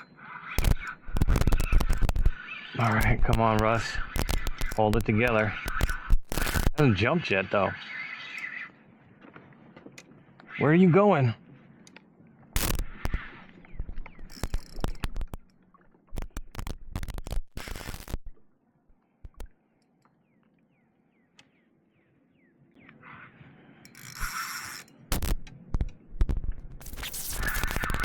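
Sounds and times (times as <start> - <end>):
fishing tackle knocks and clicks: 13.8 - 18.4, 19.2 - 20.2.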